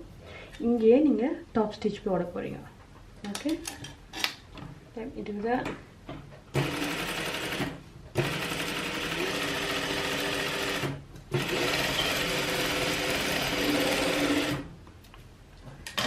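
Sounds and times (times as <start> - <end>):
sewing machine running: 6.6 - 14.7.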